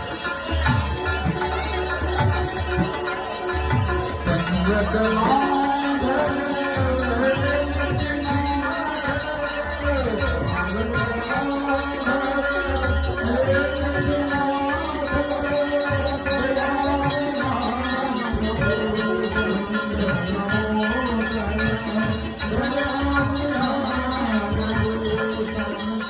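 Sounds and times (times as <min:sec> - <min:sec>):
ritual bells and hand cymbals: 0:00.0 - 0:26.0.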